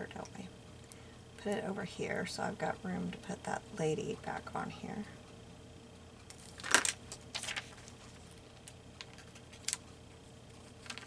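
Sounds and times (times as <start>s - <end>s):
paper rustling: 6.3s - 9.9s, 10.5s - 11.0s.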